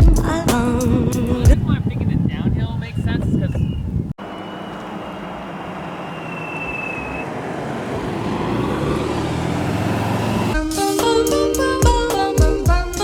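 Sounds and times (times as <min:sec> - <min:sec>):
music with a beat: 0:00.0 - 0:01.0, 0:10.6 - 0:13.0.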